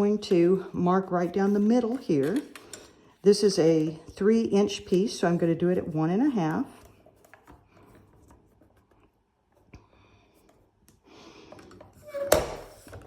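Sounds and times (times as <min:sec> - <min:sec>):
handling paper and tools: 0:00.0 - 0:09.7.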